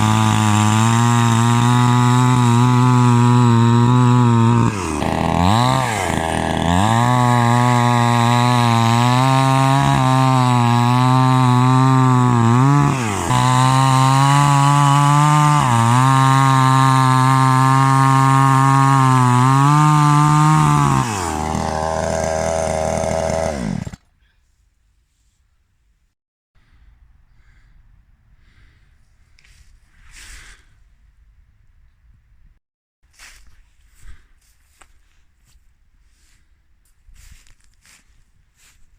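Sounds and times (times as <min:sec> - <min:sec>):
chainsaw running: 0:00.0 - 0:24.0.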